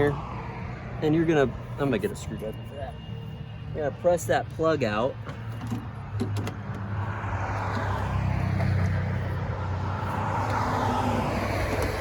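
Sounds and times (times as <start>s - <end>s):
steady low traffic hum: 0.0s - 12.0s
vehicle passing: 6.0s - 12.0s.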